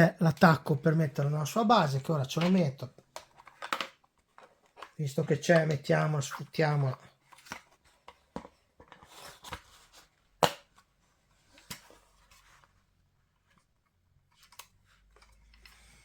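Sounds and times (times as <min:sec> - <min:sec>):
plastic toy parts rustling: 0:00.4 - 0:10.0.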